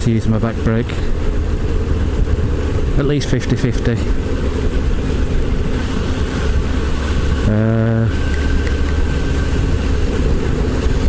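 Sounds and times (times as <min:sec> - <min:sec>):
motorcycle engine running: 0:00.0 - 0:11.0
wind rush on microphone: 0:00.0 - 0:11.0.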